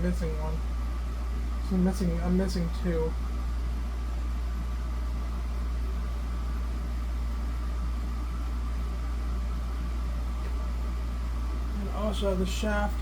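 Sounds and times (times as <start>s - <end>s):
low-pitched hum: 0.0s - 13.0s.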